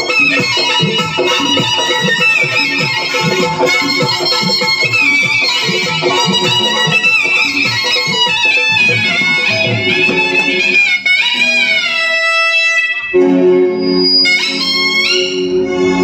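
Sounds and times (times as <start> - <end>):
steady drum beats: 0.0 - 11.0
double-reed wind instrument melody: 0.0 - 16.0.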